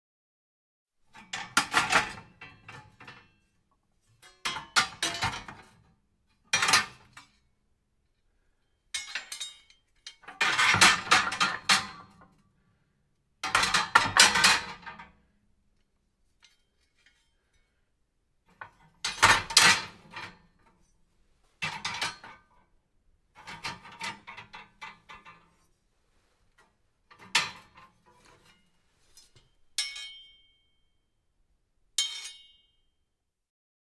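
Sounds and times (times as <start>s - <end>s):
metal fireplace tools clanking: 4.2s - 5.8s, 9.0s - 12.2s, 13.4s - 15.1s, 21.6s - 22.5s, 23.4s - 25.6s, 27.1s - 30.6s.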